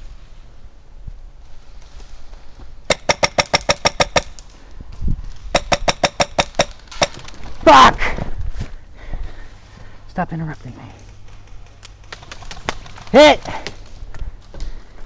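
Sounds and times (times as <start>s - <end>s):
airsoft gun shots: 2.9s - 4.3s, 5.5s - 7.2s.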